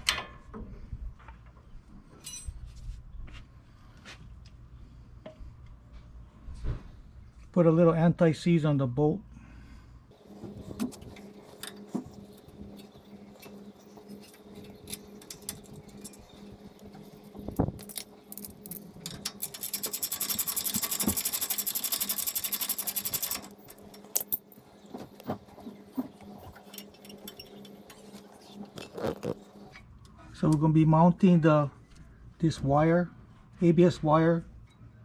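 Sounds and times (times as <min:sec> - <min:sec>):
metal tools clinking: 0:10.3 - 0:29.2
hand ratchet clicking rapidly: 0:17.8 - 0:24.3.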